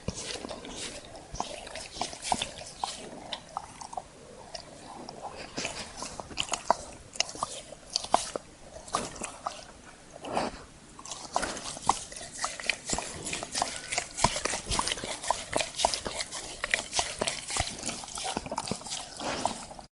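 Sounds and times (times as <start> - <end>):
dog licking wet laps: 0.0 - 3.9, 5.3 - 9.7, 11.0 - 19.9.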